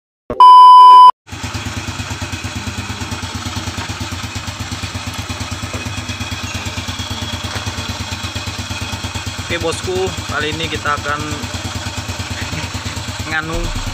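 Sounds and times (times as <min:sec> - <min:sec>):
loud beep tone: 0:00.3 - 0:01.1
scooter engine idling: 0:01.3 - 0:13.9.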